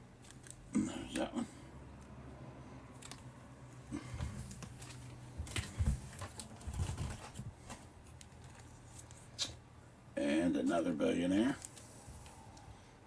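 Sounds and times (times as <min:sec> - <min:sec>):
comic books tapping and rustling: 0:03.9 - 0:09.6.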